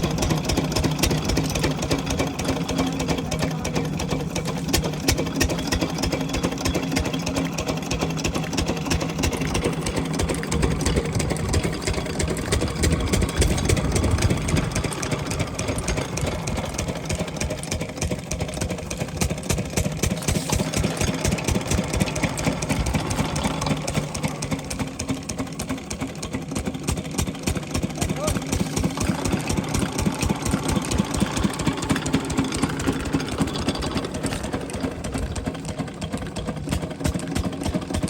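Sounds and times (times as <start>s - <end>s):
diesel engine clattering: 0.0s - 38.0s.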